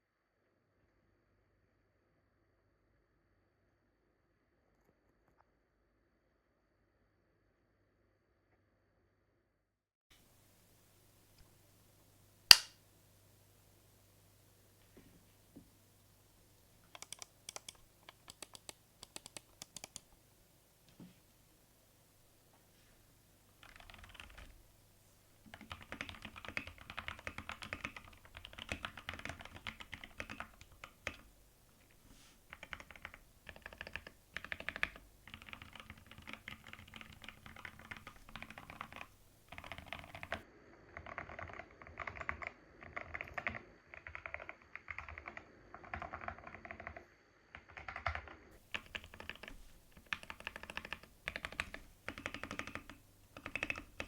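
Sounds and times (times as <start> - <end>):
mechanical keyboard typing: 12.5 - 12.8, 16.8 - 20.1, 23.6 - 24.6, 25.5 - 40.4, 41.0 - 54.0.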